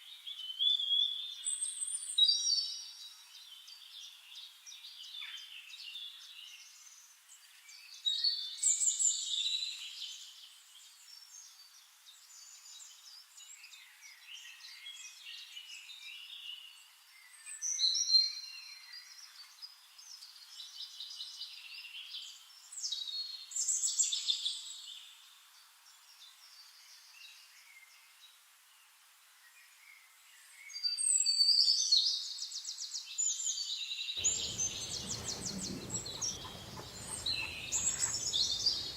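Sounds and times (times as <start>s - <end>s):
songbirds singing: 33.4s - 38.9s
bird trill: 34.2s - 38.9s.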